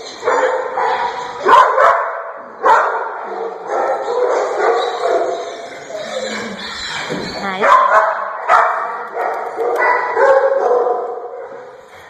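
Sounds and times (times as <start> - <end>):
dogs barking: 0.0 - 6.5, 7.6 - 11.8.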